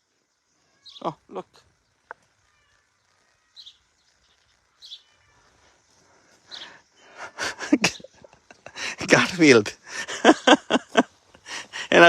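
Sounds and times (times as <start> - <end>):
faint outdoor background: 0.0 - 12.0
high bird chirps: 0.3 - 5.8, 6.5 - 7.1.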